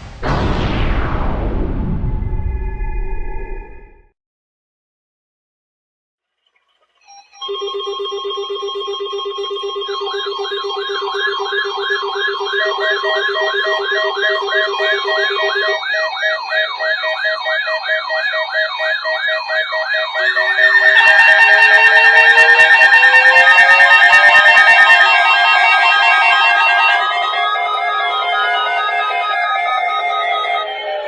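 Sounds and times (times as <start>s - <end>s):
rising and falling siren sweep: 0.0s - 4.1s, 10.5s - 31.0s
steady high alarm tones: 7.1s - 31.0s
pulsed beeps: 8.7s - 31.0s
low buzzing alarm tone: 10.0s - 31.0s.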